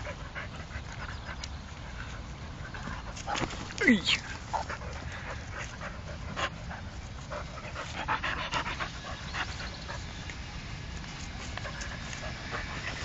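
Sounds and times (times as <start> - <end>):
dogs panting: 0.0 - 13.0
knocks and scuffling: 2.7 - 5.8.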